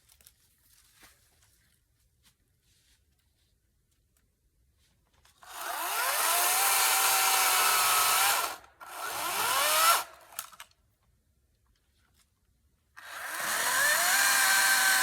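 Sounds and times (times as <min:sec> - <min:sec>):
electric chainsaw motor whining: 0:05.4 - 0:10.6, 0:13.0 - 0:15.0.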